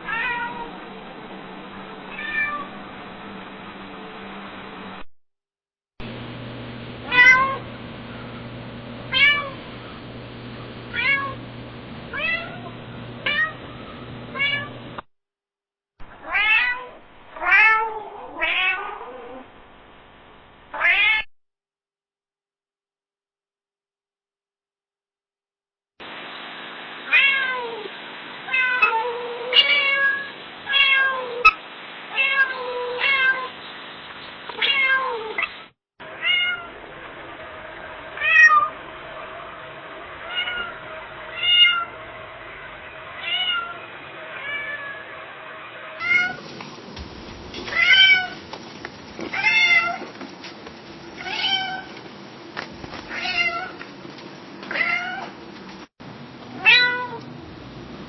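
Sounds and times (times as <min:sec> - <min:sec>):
cats meowing: 0:00.0 - 0:00.7, 0:02.1 - 0:02.7, 0:07.1 - 0:07.6, 0:40.2 - 0:42.0, 0:43.2 - 0:44.9, 0:49.3 - 0:50.0, 0:51.2 - 0:52.0, 0:53.1 - 0:53.8, 0:56.6 - 0:57.3
faint steady hum: 0:06.0 - 0:15.0
steady hiss: 0:06.0 - 0:15.0, 0:45.0 - 0:54.6.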